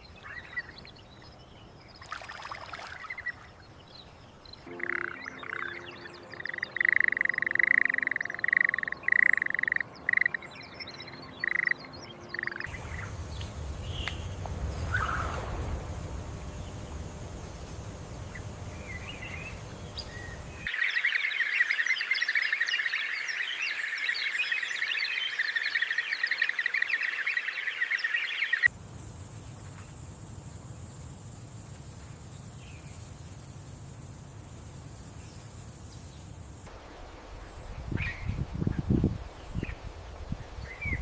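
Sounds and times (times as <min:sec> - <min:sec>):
dense chorus of chirps: 0:03.0 - 0:36.7
scattered chirps: 0:04.6 - 0:12.9
low rumble: 0:05.0 - 0:20.7.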